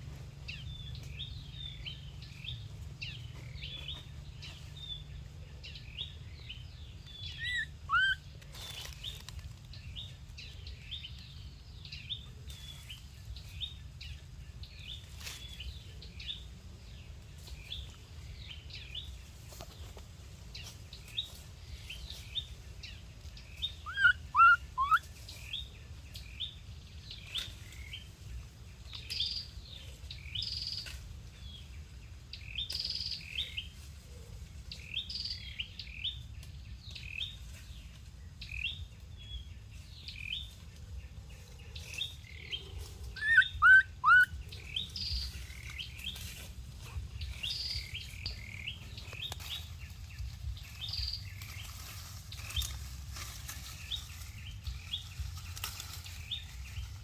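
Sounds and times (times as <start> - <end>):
small birds chirping: 0.0 - 57.0.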